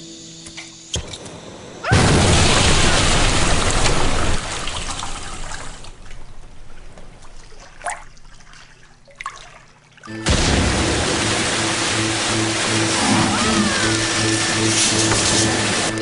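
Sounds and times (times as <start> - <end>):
water drips: 3.6 - 10.2
music: 10.1 - 16.0
water hissing and trickling: 11.1 - 15.9.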